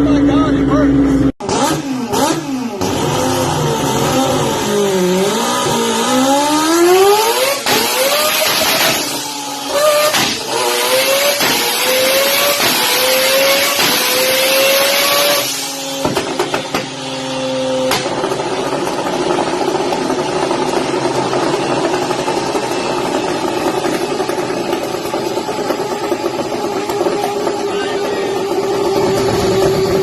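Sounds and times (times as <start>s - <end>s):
car engine accelerating: 0.0s - 30.0s
sharp exhaust pops: 7.0s - 17.0s, 17.8s - 27.6s.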